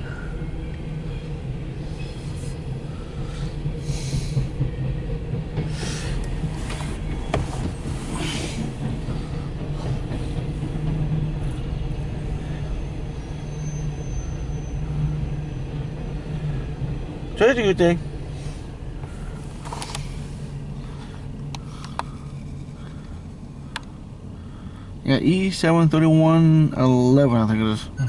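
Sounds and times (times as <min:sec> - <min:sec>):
train cars rumbling past: 0:00.0 - 0:28.0
wheel and rail noise: 0:00.0 - 0:28.0
faint high wheel squeal: 0:12.1 - 0:16.6, 0:18.4 - 0:23.4.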